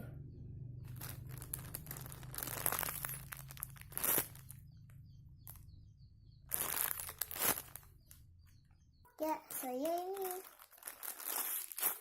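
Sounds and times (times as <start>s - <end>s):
squishy toy crinkling and rustling: 1.0s - 4.5s, 6.5s - 7.8s, 9.5s - 12.0s.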